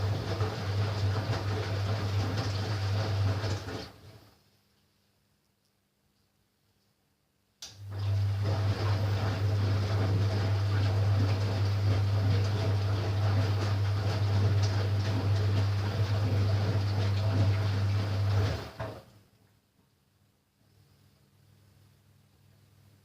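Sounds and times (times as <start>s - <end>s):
washing machine electrical hum: 0.0s - 23.0s.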